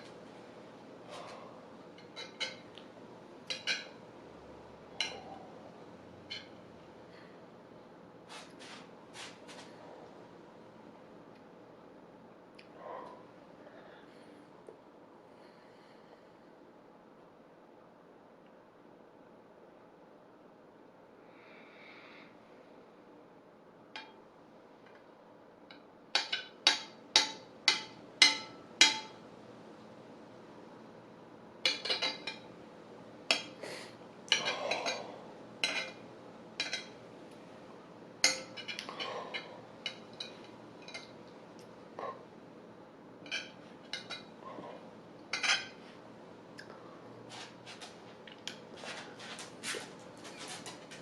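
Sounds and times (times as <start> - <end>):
utensil clinking on plate: 2.0 - 2.7, 3.5 - 4.0, 26.2 - 29.2, 31.7 - 32.5, 34.3 - 36.0, 36.6 - 37.0, 38.2 - 41.2, 43.2 - 44.3, 45.3 - 45.8.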